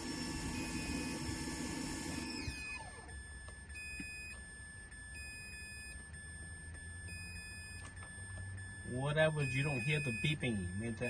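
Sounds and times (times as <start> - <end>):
motor whirring and winding down: 0.0 - 3.2
multimeter beeps: 0.1 - 11.0.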